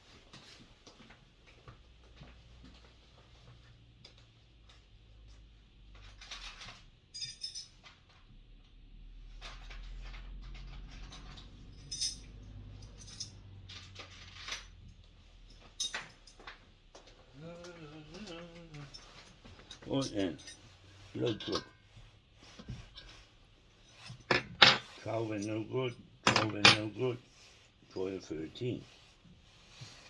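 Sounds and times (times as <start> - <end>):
metal hand tools clinking: 11.2 - 14.8, 18.7 - 21.8, 26.3 - 27.0.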